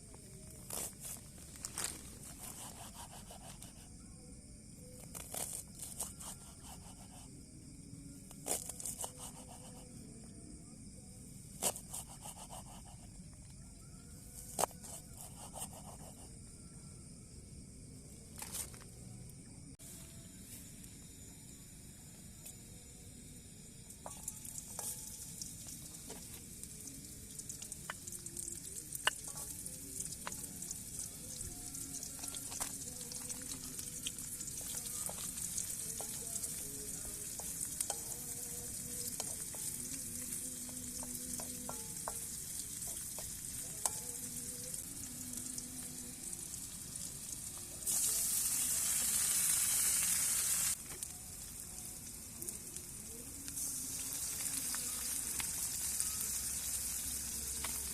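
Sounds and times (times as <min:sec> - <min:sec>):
food sizzling in frying: 0:24.0 - 0:57.9
oil pops and crackles: 0:27.3 - 0:30.7.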